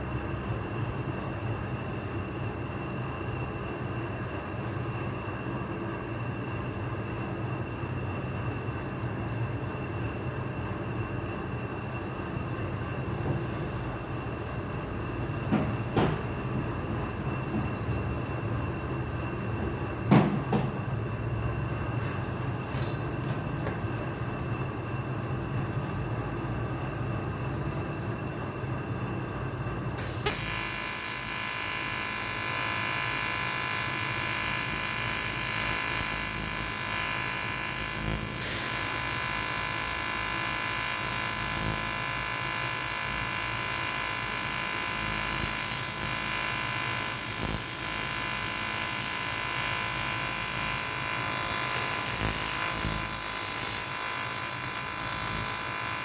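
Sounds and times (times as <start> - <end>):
welding arc buzzing and hissing: 12.8 - 26.1, 29.9 - 56.0.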